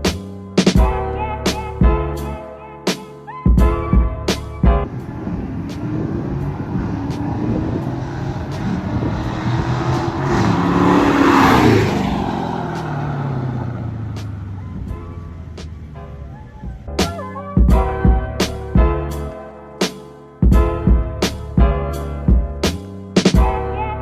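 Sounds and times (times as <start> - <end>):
car engine cold start revving: 4.9 - 16.2.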